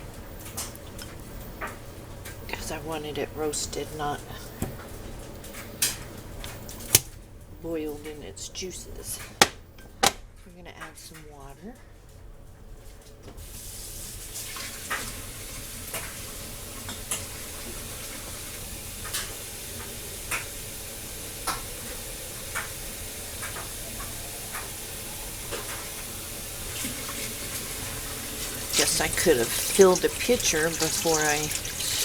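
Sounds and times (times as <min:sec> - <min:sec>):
water running from tap into pitcher: 0:13.4 - 0:32.0.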